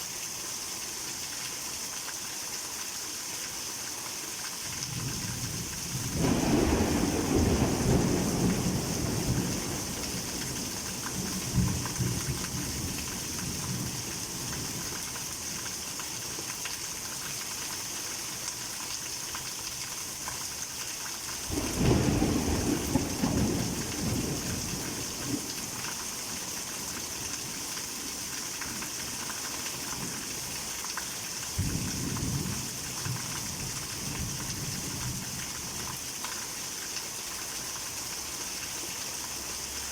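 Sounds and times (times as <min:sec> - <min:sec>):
heavy rain pouring: 0:03.8 - 0:39.9
thunder rumbling: 0:06.0 - 0:14.0, 0:21.5 - 0:25.8.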